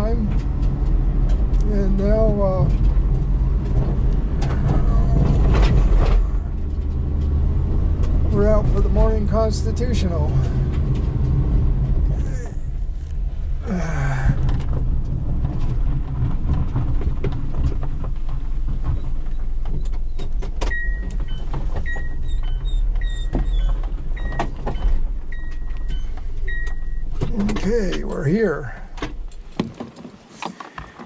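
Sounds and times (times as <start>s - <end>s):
car engine and road rumble: 0.0s - 31.0s
dashboard warning chime beeps: 20.7s - 23.4s, 24.2s - 27.2s.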